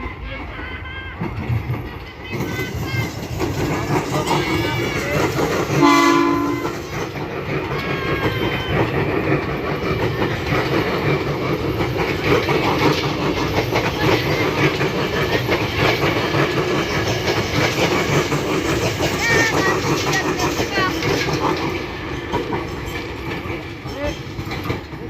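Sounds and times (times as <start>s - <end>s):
train rumbling past: 0.0s - 25.0s
wheels clacking over rails: 0.0s - 25.0s
train horn blast: 5.8s - 6.8s.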